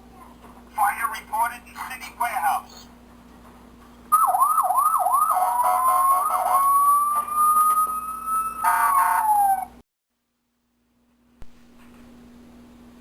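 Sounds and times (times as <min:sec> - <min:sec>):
toy fire engine siren: 0:04.1 - 0:09.8.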